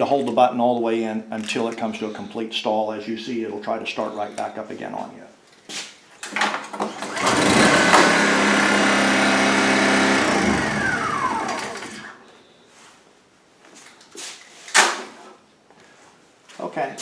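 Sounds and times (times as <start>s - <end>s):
generator engine winding down: 7.0s - 12.2s.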